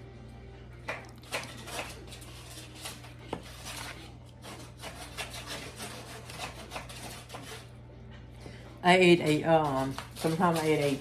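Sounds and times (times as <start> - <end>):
low electrical hum: 0.0 - 11.0
utensils scraping on a board: 1.2 - 7.8, 9.1 - 11.0.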